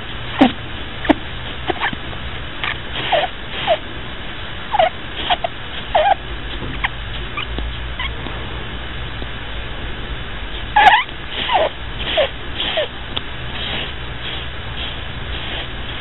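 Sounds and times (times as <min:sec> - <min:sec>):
rabbit snoring squeaks: 0:00.0 - 0:02.0, 0:02.6 - 0:03.9, 0:04.7 - 0:08.2, 0:10.5 - 0:16.0
steady hiss: 0:08.8 - 0:16.0.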